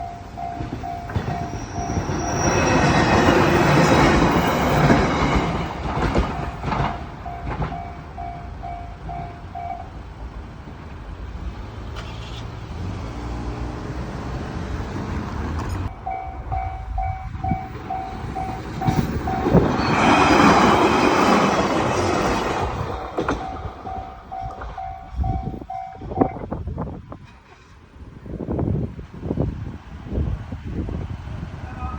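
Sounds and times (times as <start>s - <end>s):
train wheels rushing past: 0.0s - 9.6s, 10.7s - 31.9s
level-crossing warning bell: 0.0s - 10.1s, 15.9s - 26.5s.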